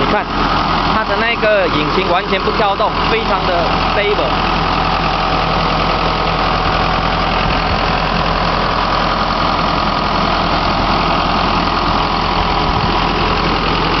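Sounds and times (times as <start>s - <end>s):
diesel engine idling: 0.0s - 14.0s.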